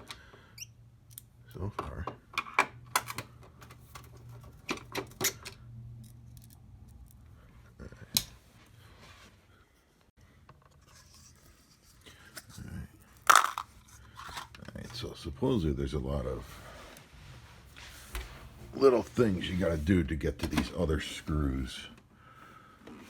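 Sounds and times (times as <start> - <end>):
screwdriver clicks and metal clatter: 2.4 - 7.2.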